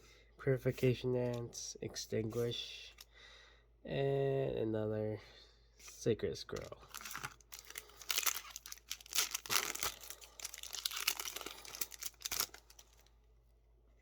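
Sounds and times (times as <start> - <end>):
foil wrapper crinkling and tearing: 6.9 - 13.1.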